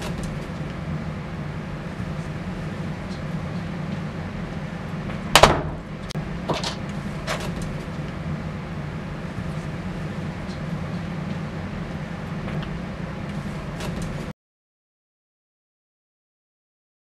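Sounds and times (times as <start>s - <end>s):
steady low hum: 0.0s - 14.3s
door shutting thump: 5.4s - 5.9s.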